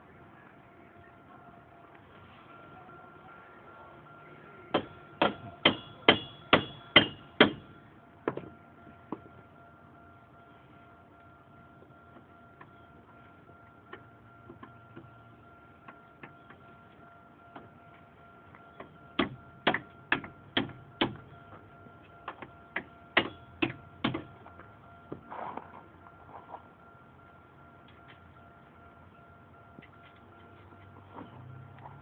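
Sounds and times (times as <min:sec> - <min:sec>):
faint steady hum: 0:00.0 - 0:32.0
hammer knocks: 0:04.7 - 0:07.6.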